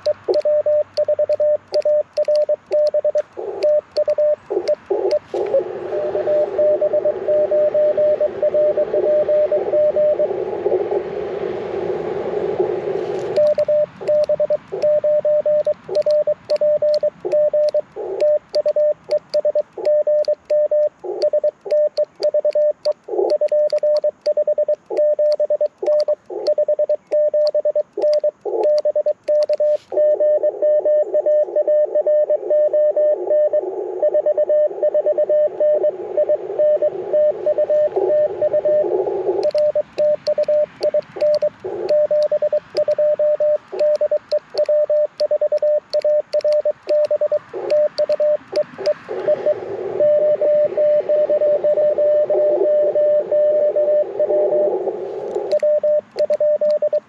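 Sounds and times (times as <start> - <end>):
morse code tone: 0.0 - 10.4, 12.6 - 57.0
receiver hiss: 0.0 - 57.0
morse key clicks: 15.6 - 29.6, 39.4 - 43.0, 43.6 - 49.0.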